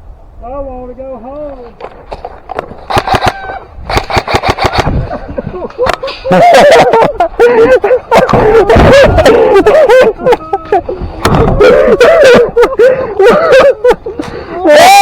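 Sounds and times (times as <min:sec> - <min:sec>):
sharp clicks: 0:01.7 - 0:05.0
person laughing: 0:04.9 - 0:15.0.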